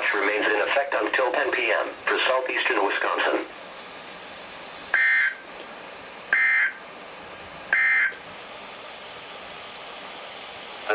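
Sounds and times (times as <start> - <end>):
radio hiss: 0.0 - 3.6, 10.2 - 10.9
shrill warbling data tone: 5.0 - 5.4, 6.4 - 6.8, 7.7 - 8.2.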